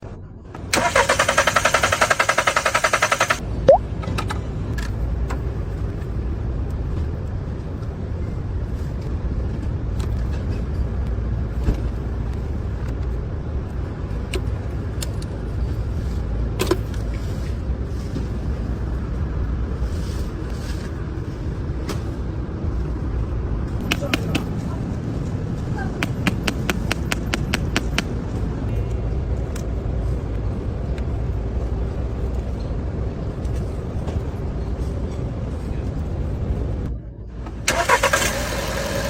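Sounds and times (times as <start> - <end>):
car rumble: 3.4 - 39.0.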